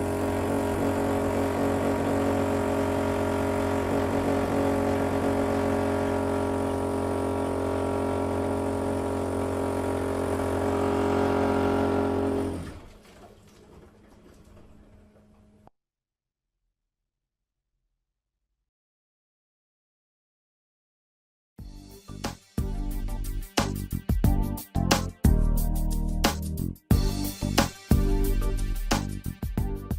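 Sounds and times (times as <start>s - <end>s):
motor running: 0.0s - 13.0s.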